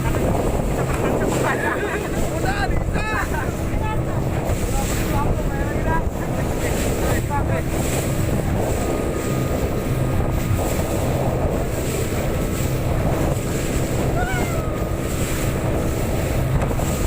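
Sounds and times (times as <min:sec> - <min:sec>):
motorboat engine running: 0:00.0 - 0:17.0
waves splashing against hull: 0:00.0 - 0:17.0
wind buffeting microphone: 0:00.0 - 0:17.0.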